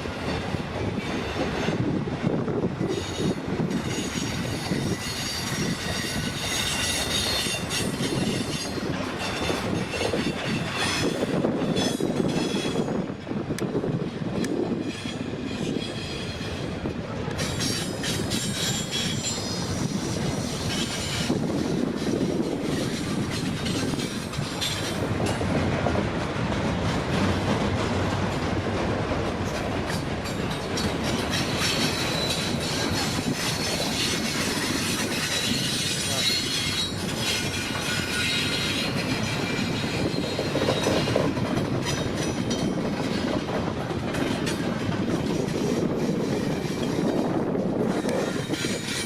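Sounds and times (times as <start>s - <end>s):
freight train rolling past: 0.0s - 49.0s
high wheel squeal: 3.0s - 13.0s, 17.4s - 25.0s, 31.1s - 41.3s.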